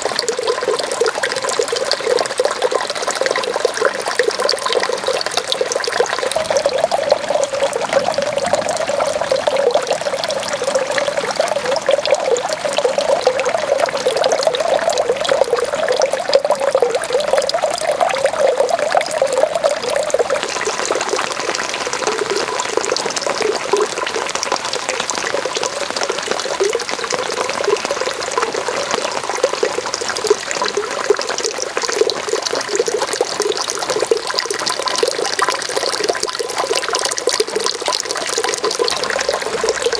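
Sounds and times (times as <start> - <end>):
running water trickling: 0.0 - 39.9
steady rain hissing: 5.8 - 33.4, 38.6 - 39.9.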